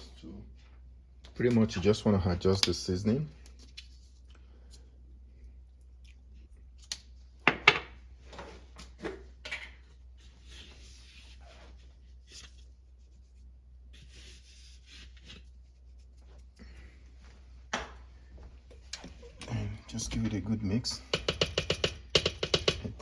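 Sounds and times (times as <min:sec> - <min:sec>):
scraping and rubbing strokes: 0:10.2 - 0:16.6
utensils knocking: 0:21.0 - 0:23.0.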